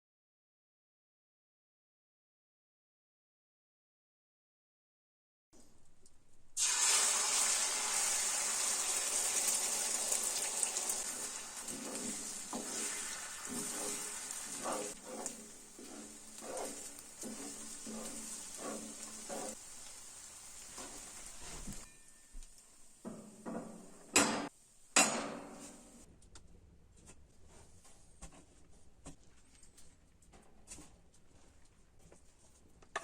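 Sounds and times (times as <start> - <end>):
food sizzling in a pan: 6.6 - 21.9.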